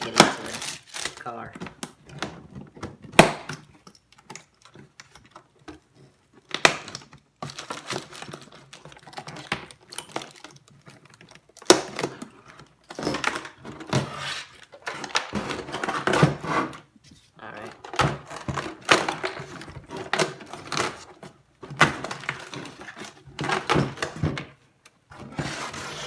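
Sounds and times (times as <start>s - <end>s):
plastic packaging rustling: 0.0s - 2.8s, 3.6s - 26.0s.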